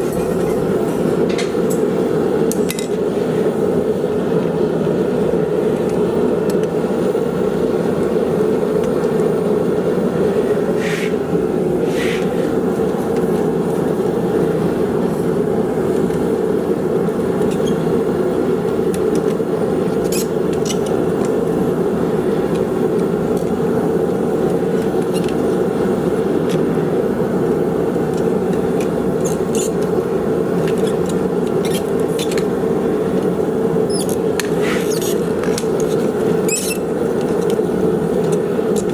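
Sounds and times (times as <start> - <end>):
forge roaring: 10.2 - 12.8.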